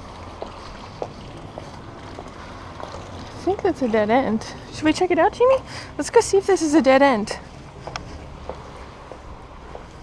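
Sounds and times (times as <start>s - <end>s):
footsteps walking: 0.3s - 3.1s, 7.8s - 10.0s.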